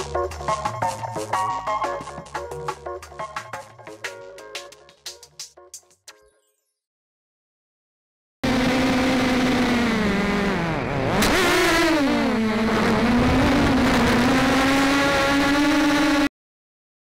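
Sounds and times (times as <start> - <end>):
drone propellers buzzing whine: 8.4 - 16.3.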